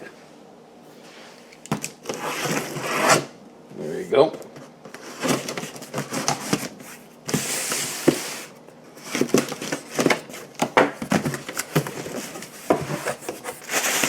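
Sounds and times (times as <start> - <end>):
packaging rustling slide: 11.1 - 14.0.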